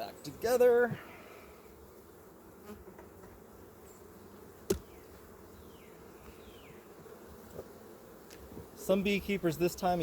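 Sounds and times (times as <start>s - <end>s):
honeybees buzzing: 0.0s - 10.0s
sharp knock of wooden hive parts: 4.6s - 5.2s.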